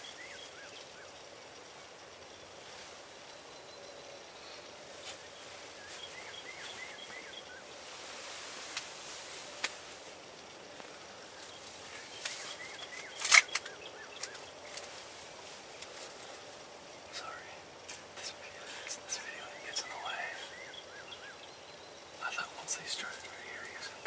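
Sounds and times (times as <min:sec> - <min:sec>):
quick repeated bird calls: 0:11.2 - 0:15.0
sharp clicks: 0:12.2 - 0:14.9.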